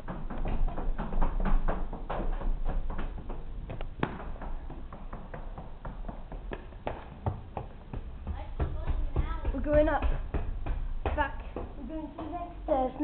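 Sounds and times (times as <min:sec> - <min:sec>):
footsteps on hard floor: 0:04.1 - 0:12.5.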